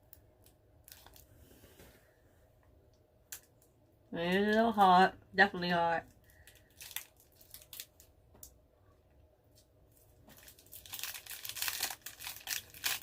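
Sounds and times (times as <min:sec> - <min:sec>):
plastic wrapper crinkling: 0:00.0 - 0:01.4, 0:06.1 - 0:08.5, 0:09.9 - 0:13.0.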